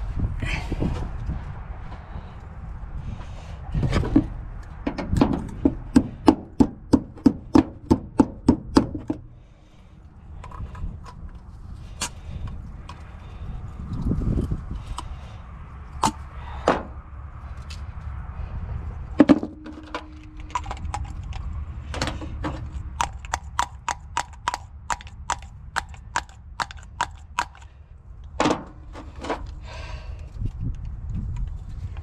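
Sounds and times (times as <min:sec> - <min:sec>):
sharp tool clicks: 0:23.0 - 0:27.7.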